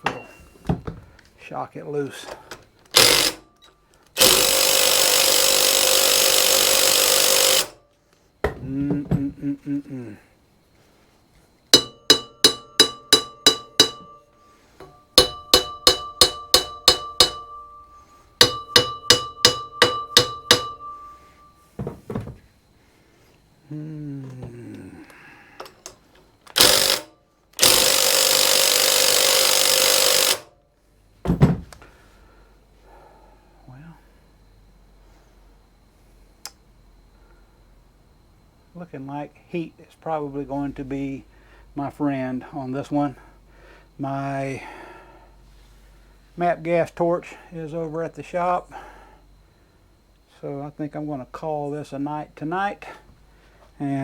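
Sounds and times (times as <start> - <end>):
impact wrench hammering: 2.9 - 3.5, 4.2 - 7.8, 11.8 - 21.6, 26.5 - 30.5
sharp knocks: 11.8 - 14.2, 14.8 - 21.2.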